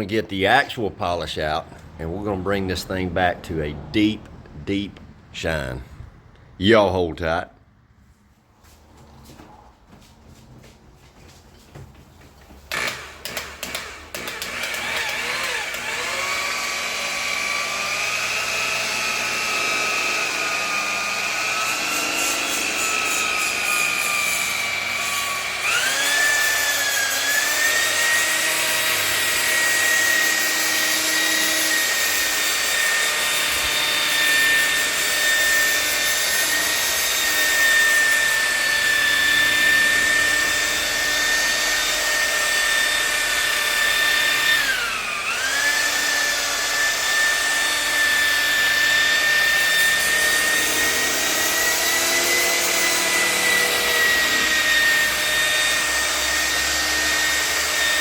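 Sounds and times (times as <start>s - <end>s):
electric polisher whine: 12.7s - 58.0s.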